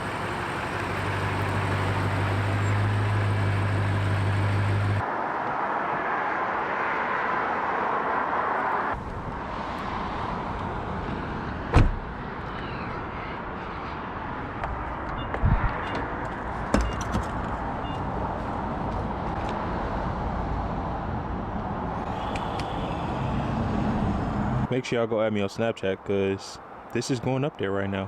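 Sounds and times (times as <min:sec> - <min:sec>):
car engine drone: 0:00.0 - 0:05.2, 0:21.2 - 0:24.7
road and traffic noise: 0:00.0 - 0:28.0.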